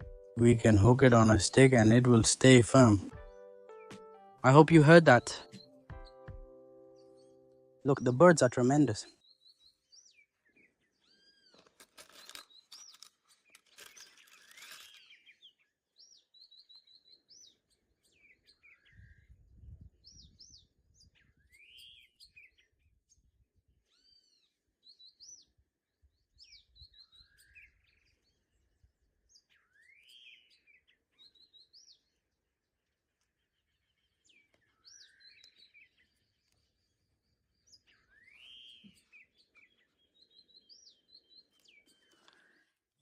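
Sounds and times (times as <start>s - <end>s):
faint birds chirping: 0.0s - 43.0s
rustling clatter: 11.6s - 15.1s.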